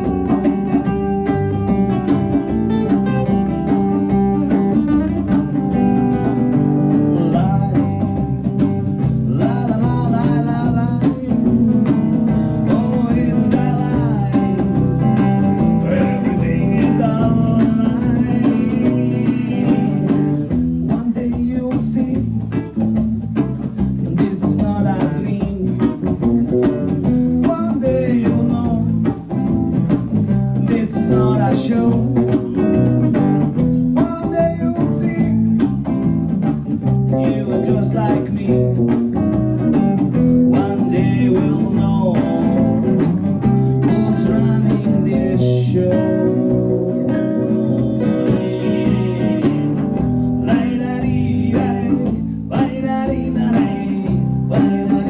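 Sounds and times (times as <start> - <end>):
live band playing: 0.0 - 55.0
person singing: 6.9 - 22.8, 24.0 - 26.2, 27.4 - 29.2, 30.6 - 32.9, 33.9 - 35.7, 37.2 - 39.2, 40.5 - 55.0.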